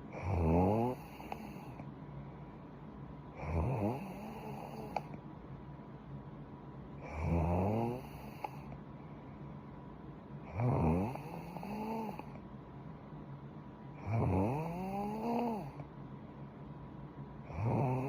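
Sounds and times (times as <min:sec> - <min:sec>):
woman snoring: 0:00.2 - 0:01.8, 0:03.4 - 0:05.0, 0:07.0 - 0:08.7, 0:10.5 - 0:12.4, 0:14.0 - 0:15.8, 0:17.5 - 0:18.0.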